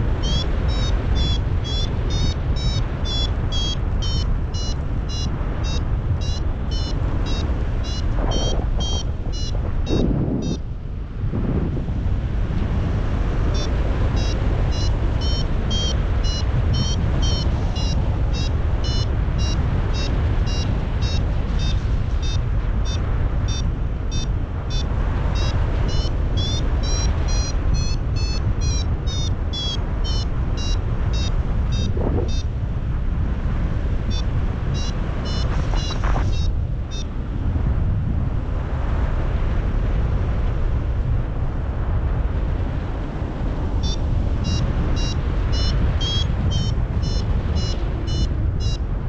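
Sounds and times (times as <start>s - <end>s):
wind rush on microphone: 0.0s - 49.0s
variometer beeping: 0.2s - 10.6s, 13.5s - 32.5s, 34.1s - 37.1s, 43.8s - 48.9s.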